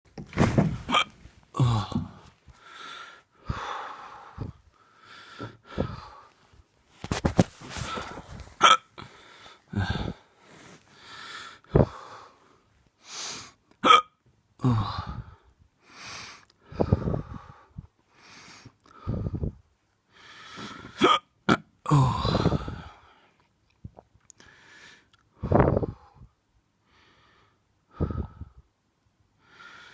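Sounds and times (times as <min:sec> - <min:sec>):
person hiccuping: 0:00.9 - 0:01.2, 0:08.6 - 0:08.9, 0:13.8 - 0:14.2, 0:21.0 - 0:21.7.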